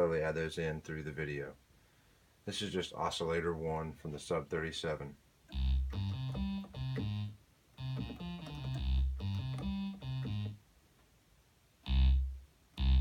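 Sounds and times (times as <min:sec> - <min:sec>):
synthesizer bass riff: 0:05.5 - 0:10.6, 0:11.9 - 0:13.0.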